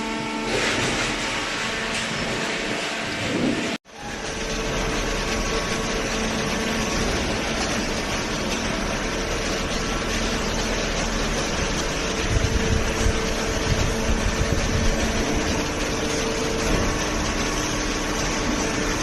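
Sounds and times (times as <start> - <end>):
baler mechanical hum: 0.0 - 19.0.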